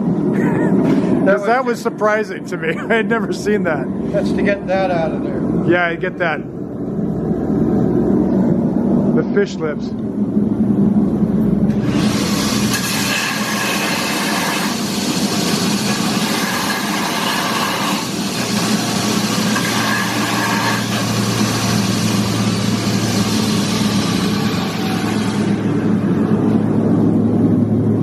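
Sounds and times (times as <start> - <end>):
motor hum: 6.4 - 28.0
belt grinder grinding steel: 11.7 - 25.6.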